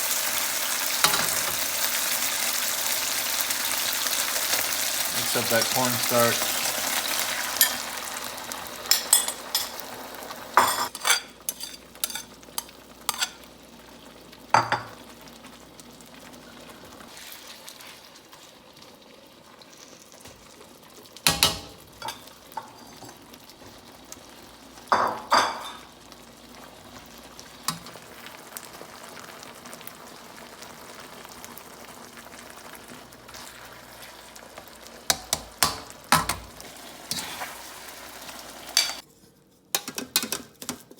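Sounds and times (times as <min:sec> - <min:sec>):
chicken sizzling in a pan: 0:00.0 - 0:39.0
utensil clinking and scraping: 0:10.6 - 0:12.3.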